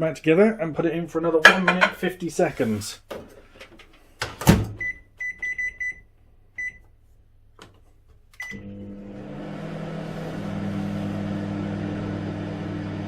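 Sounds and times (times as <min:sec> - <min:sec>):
keypad beeps: 0:04.8 - 0:06.0
microwave oven humming: 0:08.5 - 0:13.0.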